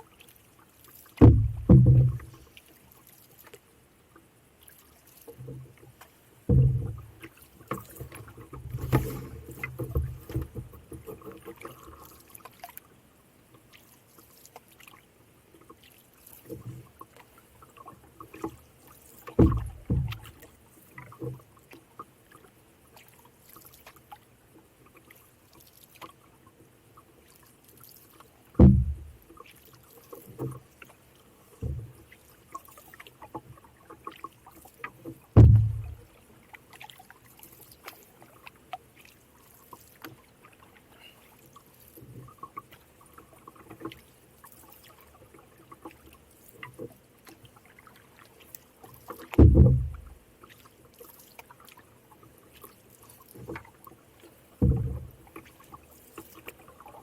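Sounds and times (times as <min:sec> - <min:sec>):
faint paddle splashing: 0:00.0 - 0:57.0
thumps and knocks on canoe: 0:01.2 - 0:02.4, 0:06.4 - 0:11.6, 0:19.2 - 0:20.4, 0:28.6 - 0:29.3, 0:31.6 - 0:32.0, 0:35.1 - 0:36.1, 0:49.2 - 0:50.2, 0:54.6 - 0:55.4.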